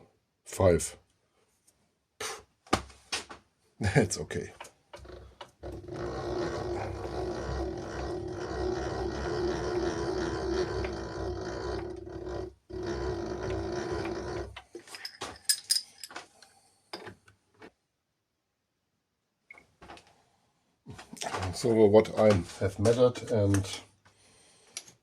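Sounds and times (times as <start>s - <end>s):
sharp clicks and knocks: 20.9s - 23.8s.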